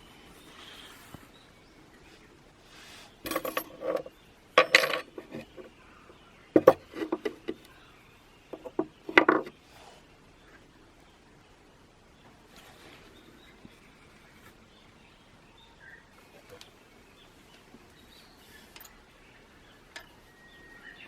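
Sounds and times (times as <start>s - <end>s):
metal tools clinking and clattering: 3.2s - 5.7s.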